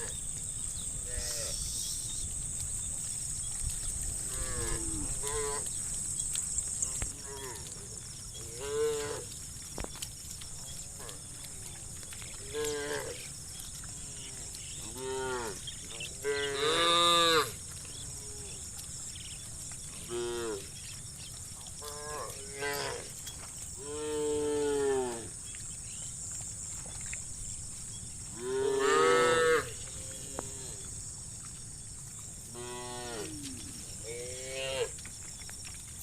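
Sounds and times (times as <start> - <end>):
cows mooing: 4.2 - 5.7, 7.2 - 7.7, 8.4 - 9.3, 14.0 - 17.6, 20.1 - 20.7, 23.8 - 25.3, 28.3 - 30.8, 32.5 - 35.0.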